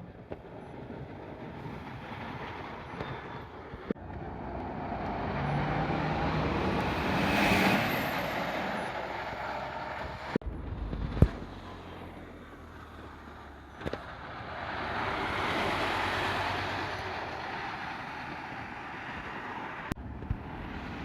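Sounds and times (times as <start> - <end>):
road vehicle passing: 0.5 - 21.0
wind thumps on microphone: 10.4 - 11.8.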